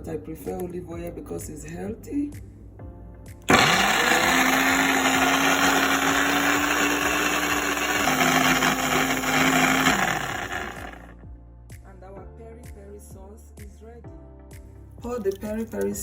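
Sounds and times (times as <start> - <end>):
blender motor running: 3.5 - 11.2.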